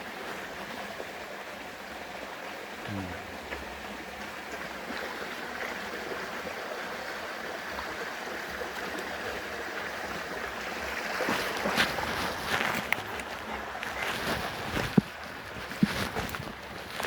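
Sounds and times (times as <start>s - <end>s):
crackles and knocks: 11.4s - 17.0s.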